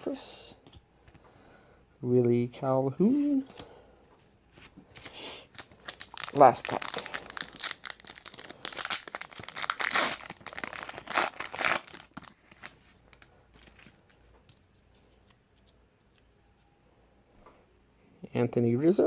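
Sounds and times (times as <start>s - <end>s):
card pack wrapper tearing: 4.9s - 14.6s.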